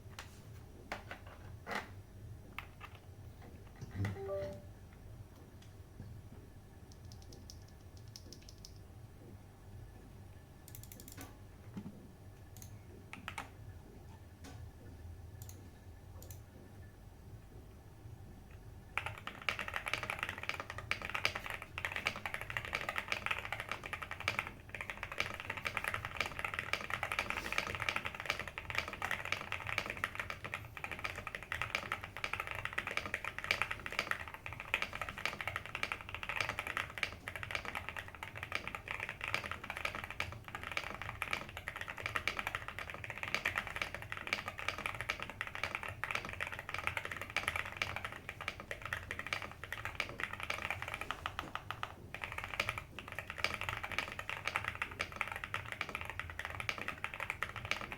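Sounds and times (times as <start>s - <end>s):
keyboard typing: 3.8s - 4.7s, 6.9s - 8.8s, 10.7s - 11.3s, 12.6s - 13.6s, 19.0s - 57.9s.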